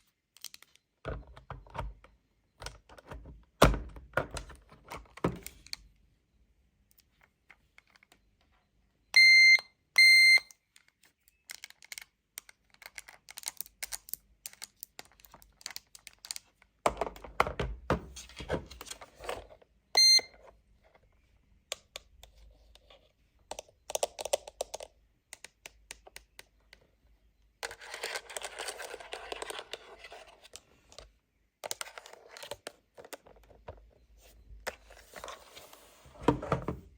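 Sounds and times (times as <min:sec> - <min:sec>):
toy cash register beeping: 0:09.1 - 0:10.5, 0:20.0 - 0:20.4.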